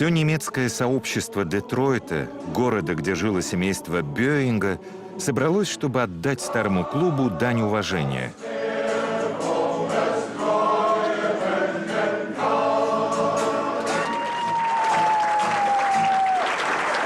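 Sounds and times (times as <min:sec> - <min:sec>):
male choir singing: 0:00.0 - 0:14.2
applause: 0:13.8 - 0:17.0.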